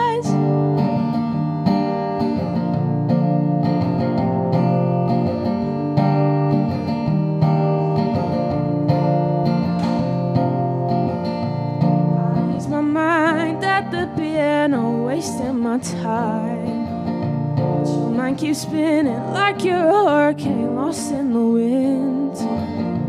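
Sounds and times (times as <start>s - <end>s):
person singing with vibrato: 0.0s - 0.4s
acoustic guitar strumming chords: 0.0s - 23.0s.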